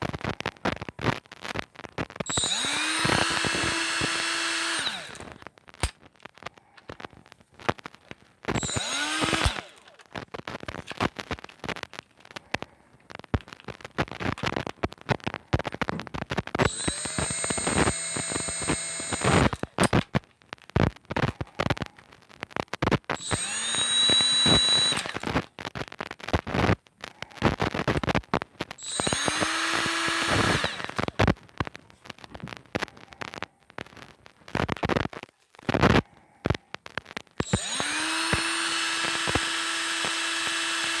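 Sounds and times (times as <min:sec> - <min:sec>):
die grinder whining: 0:02.2 - 0:05.9, 0:08.5 - 0:10.1, 0:16.6 - 0:20.0, 0:23.2 - 0:25.4, 0:28.8 - 0:31.3, 0:37.4 - 0:41.0.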